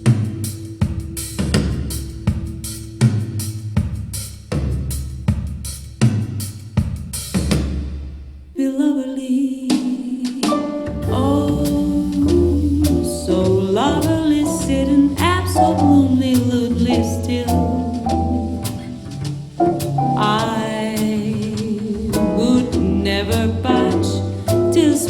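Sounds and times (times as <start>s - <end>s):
bass line: 0.0s - 5.8s, 10.7s - 25.0s
drum kit playing: 0.0s - 8.5s, 10.3s - 25.0s
sustained instrument notes: 10.4s - 20.7s.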